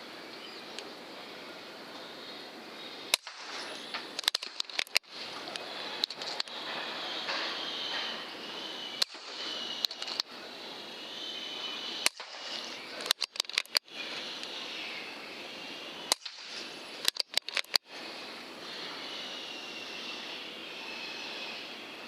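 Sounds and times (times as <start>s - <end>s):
faint hiss: 0.0s - 22.0s
air rifle shot crack: 3.1s - 5.0s, 12.0s - 13.3s, 16.1s - 17.8s
quick run of clicks: 3.1s - 6.6s, 9.0s - 10.3s, 12.0s - 14.6s, 16.1s - 17.9s.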